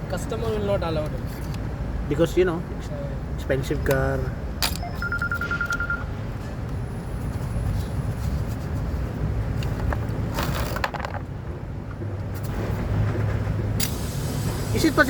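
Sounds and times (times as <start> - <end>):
vehicle low rumble: 0.0 - 15.0
high pulsing beep: 4.8 - 6.1.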